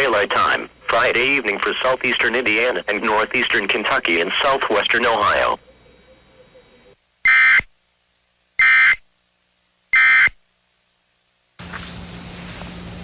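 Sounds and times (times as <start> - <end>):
steady hiss with low hum: 0.0 - 13.0
squawking digital data tones: 0.9 - 7.7, 8.6 - 9.0, 9.9 - 10.4.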